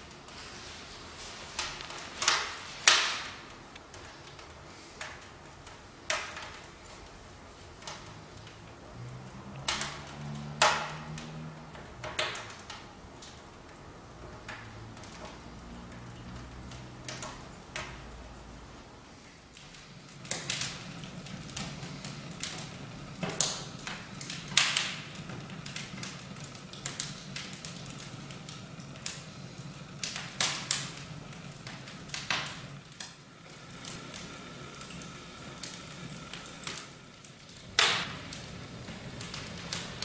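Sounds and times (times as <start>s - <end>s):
fireplace fire crackling: 0.0s - 40.0s
steady low hum: 19.7s - 40.0s.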